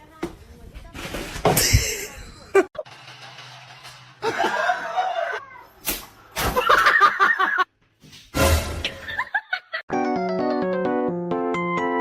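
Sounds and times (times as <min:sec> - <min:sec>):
person laughing: 0:04.2 - 0:05.4, 0:06.6 - 0:07.7
sharp slap: 0:05.8 - 0:06.6
keyboard background music: 0:09.9 - 0:12.0.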